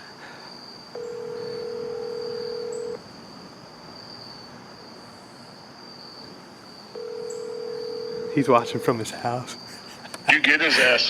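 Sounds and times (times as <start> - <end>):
high insect trill: 0.0 - 11.0
telephone ringback tone: 1.0 - 3.0, 7.0 - 9.1.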